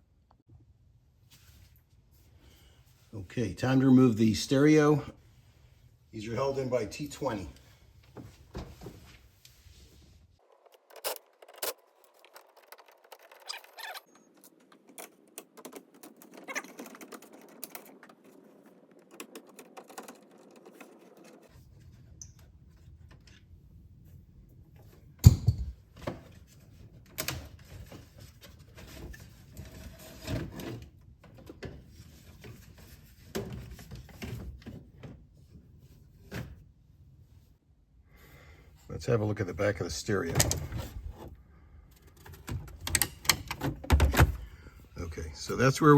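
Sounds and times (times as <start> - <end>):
hand tools clicking and rattling: 10.7 - 21.5.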